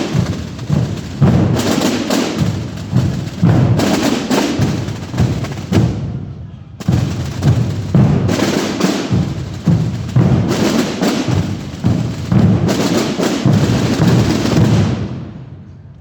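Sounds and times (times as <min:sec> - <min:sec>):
group of drums playing: 0:00.0 - 0:06.2, 0:06.8 - 0:15.2.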